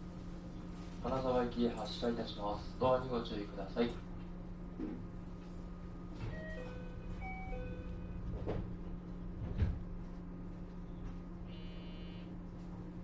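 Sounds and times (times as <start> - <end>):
electric train humming: 0.0 - 13.0
electronic door chime: 6.2 - 8.2.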